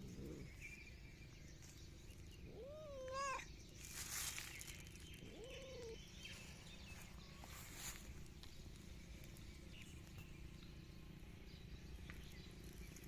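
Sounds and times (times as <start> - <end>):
cat meowing: 2.6 - 3.5.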